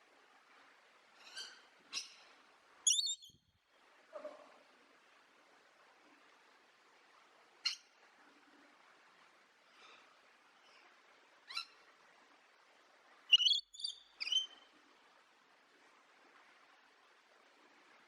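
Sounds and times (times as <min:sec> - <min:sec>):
bird calls: 0:02.9 - 0:03.4, 0:13.3 - 0:14.6.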